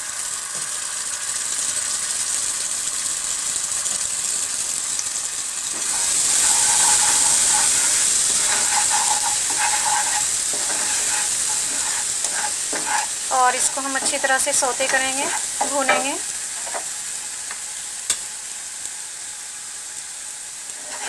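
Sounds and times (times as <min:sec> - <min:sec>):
paste sizzling in hot oil: 0:00.0 - 0:21.0
spatula stirring pan: 0:05.6 - 0:18.2, 0:20.7 - 0:21.0.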